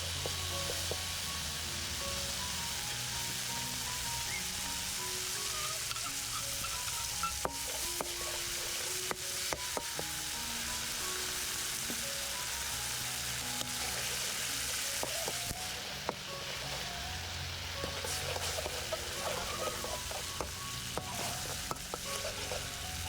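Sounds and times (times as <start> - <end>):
food sizzling in a hot pan: 0.0 - 23.0
utensil clicking against pan: 17.8 - 22.8.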